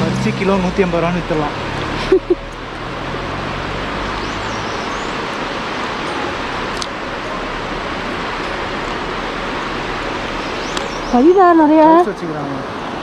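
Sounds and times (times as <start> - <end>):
steady rushing noise: 0.0 - 13.0.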